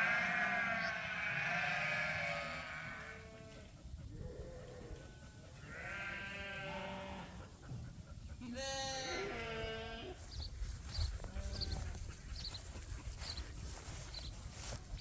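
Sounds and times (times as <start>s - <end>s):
lambs bleating: 0.0s - 3.5s, 5.7s - 7.3s, 8.5s - 10.2s.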